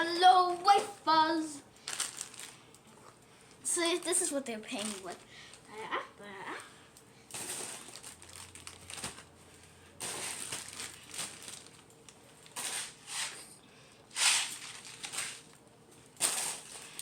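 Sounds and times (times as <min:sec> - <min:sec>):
snack wrappers crinkling: 0:01.7 - 0:05.7, 0:07.0 - 0:13.4, 0:14.1 - 0:17.0.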